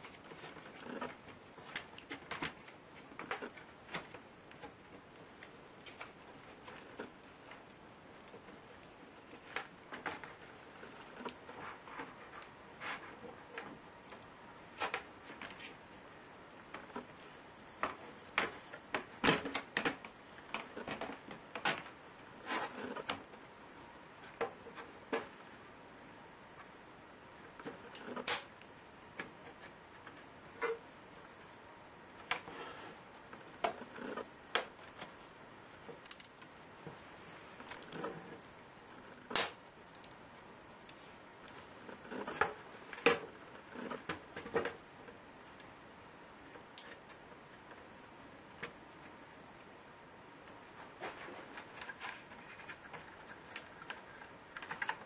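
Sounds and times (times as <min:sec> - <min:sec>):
laptop parts clicking and knocking: 0:16.6 - 0:22.0.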